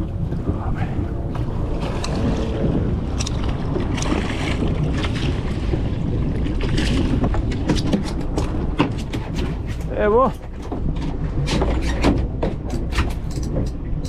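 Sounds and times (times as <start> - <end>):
water sounds: 0.0 - 14.0
wind buffeting microphone: 0.0 - 14.0.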